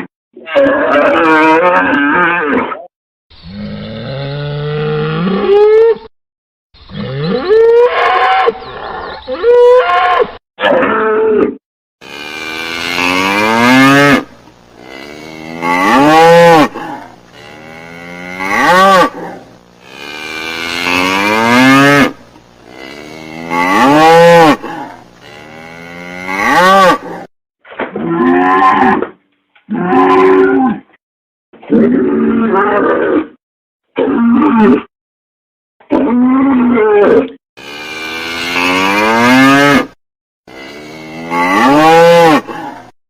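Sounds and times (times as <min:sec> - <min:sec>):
cattle mooing: 0:12.0 - 0:27.3, 0:37.6 - 0:43.0.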